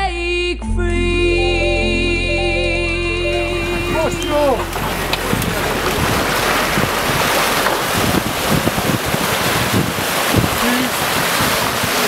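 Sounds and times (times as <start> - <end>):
water and waves rushing: 3.3 - 12.0
strong wind buffeting microphone: 3.4 - 12.0.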